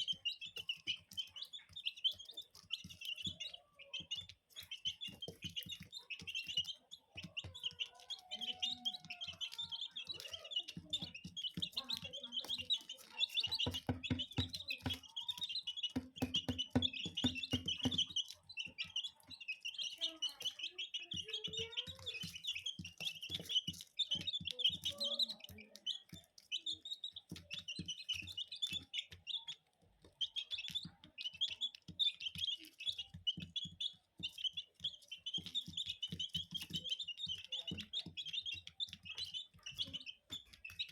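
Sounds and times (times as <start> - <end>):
beaks pecking taps: 0.0 - 40.9
chicks peeping: 0.0 - 40.9.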